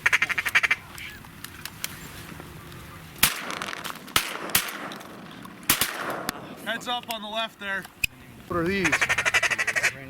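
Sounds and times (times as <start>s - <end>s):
rapid clicking chatter: 0.0s - 10.0s
shotgun shots: 3.2s - 6.8s.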